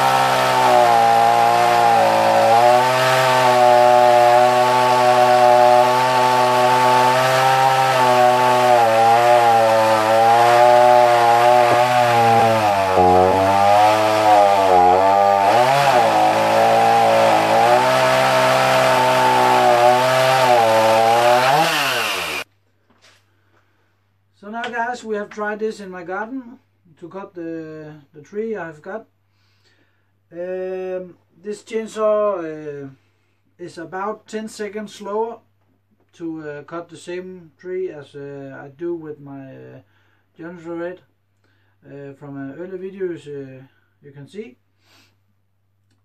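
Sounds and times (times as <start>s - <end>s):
chainsaw cutting a tree: 0.0s - 22.5s.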